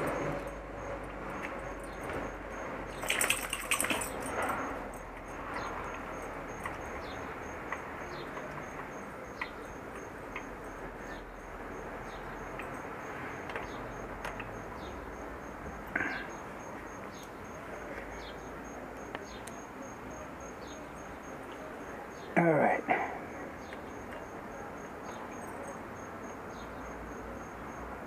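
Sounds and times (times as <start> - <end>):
cricket chirping: 0.0 - 28.0.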